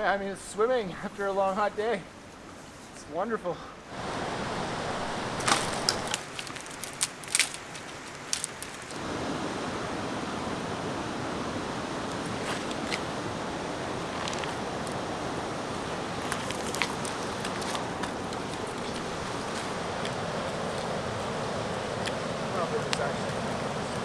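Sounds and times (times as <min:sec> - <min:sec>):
river water rushing: 0:03.8 - 0:24.0
sharp clicks and splashy ticks: 0:05.4 - 0:09.0, 0:16.1 - 0:24.0.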